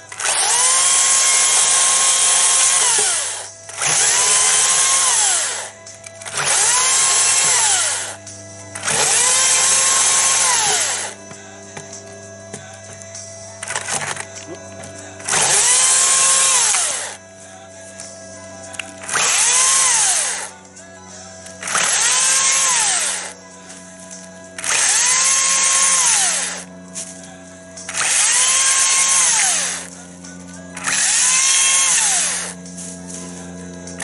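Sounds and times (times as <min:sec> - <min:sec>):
chainsaw motor whining: 0:00.0 - 0:34.0.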